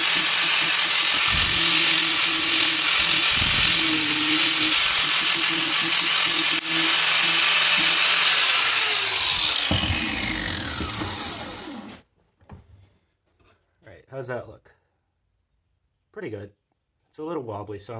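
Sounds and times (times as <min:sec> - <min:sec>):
angle grinder grinding steel: 0:00.0 - 0:12.0
grinder whine spinning down: 0:00.0 - 0:12.0.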